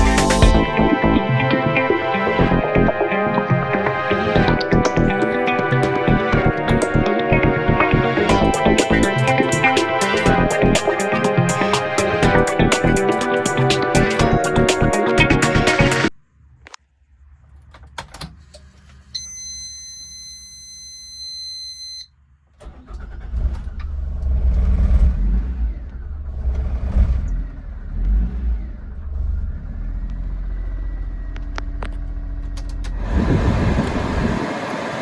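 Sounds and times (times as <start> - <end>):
van engine starting and revving: 22.6 - 35.0.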